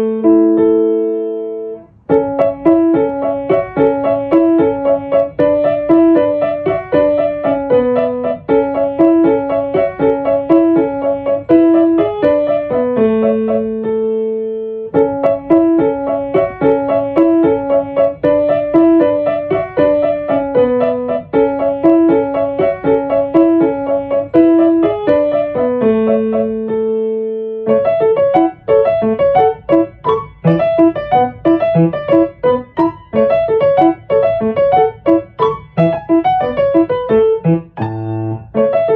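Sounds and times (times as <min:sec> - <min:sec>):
solo piano music: 0:00.0 - 0:38.9.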